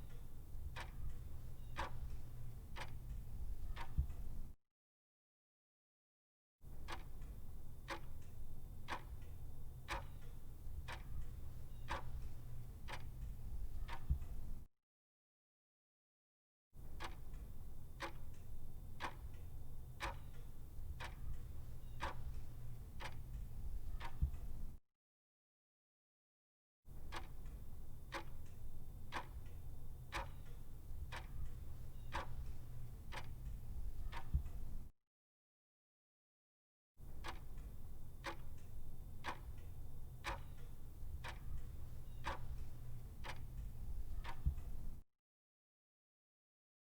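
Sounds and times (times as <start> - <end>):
low steady hum: 0.0 - 4.5, 7.4 - 14.6, 17.5 - 24.8, 27.5 - 34.9, 37.6 - 45.0
regular ticking: 20.0 - 24.5, 28.1 - 34.7, 38.2 - 44.8
sharp ticks: 37.2 - 44.8.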